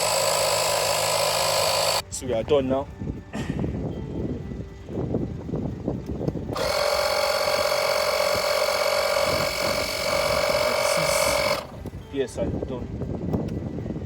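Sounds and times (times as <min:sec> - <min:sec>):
air compressor buzzing hum: 0:00.0 - 0:02.2, 0:03.0 - 0:14.0.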